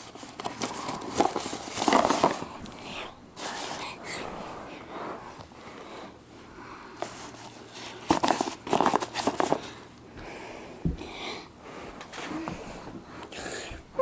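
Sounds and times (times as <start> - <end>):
handling clicks and rustling: 0.0 - 2.8.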